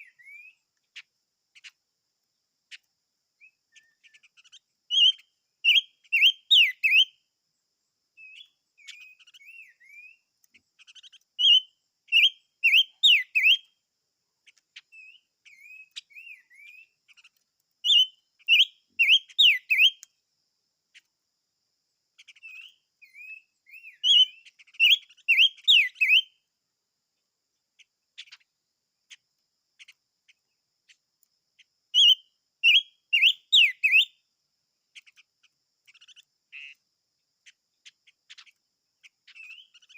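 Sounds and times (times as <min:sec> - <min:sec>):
bird singing whistled notes: 0:00.0 - 0:01.8, 0:03.4 - 0:07.3, 0:08.2 - 0:13.8, 0:14.5 - 0:20.1, 0:22.2 - 0:26.4, 0:31.6 - 0:34.3, 0:35.9 - 0:36.8, 0:37.5 - 0:39.9
bird twittering: 0:03.4 - 0:07.2, 0:08.2 - 0:10.2, 0:10.8 - 0:13.7, 0:14.5 - 0:20.1, 0:22.2 - 0:26.4, 0:31.6 - 0:34.2, 0:35.0 - 0:36.8, 0:37.4 - 0:39.9.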